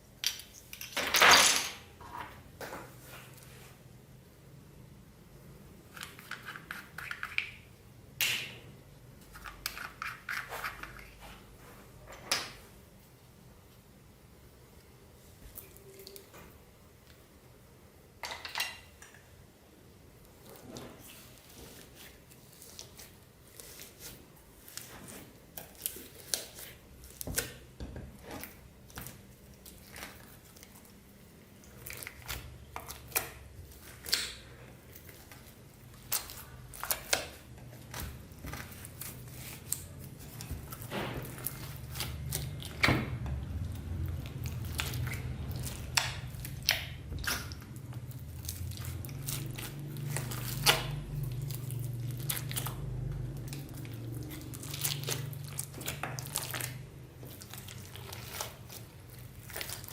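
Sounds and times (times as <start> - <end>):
low steady hum: 1.6 - 59.9.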